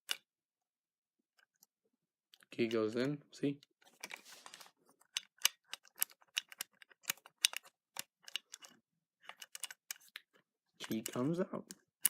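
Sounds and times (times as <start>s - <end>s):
key clicking in lock cylinder: 5.0s - 12.0s.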